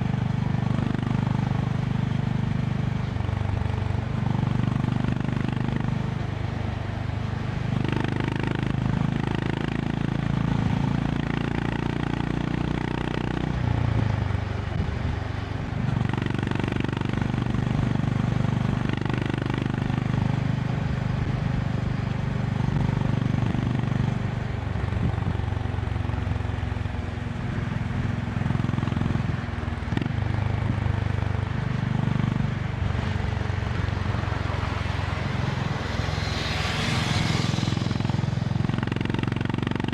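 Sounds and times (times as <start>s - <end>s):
motorcycle engine at speed: 0.0s - 39.9s
wind rushing: 33.6s - 38.9s.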